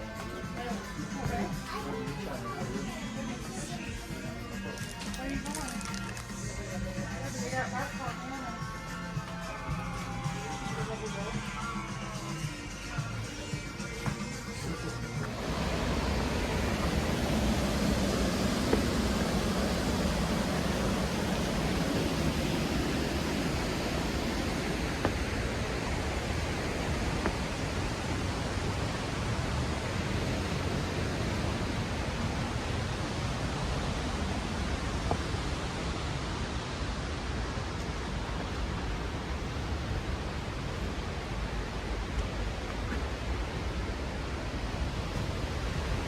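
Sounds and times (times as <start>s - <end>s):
creek water over rocks: 12.9s - 46.0s.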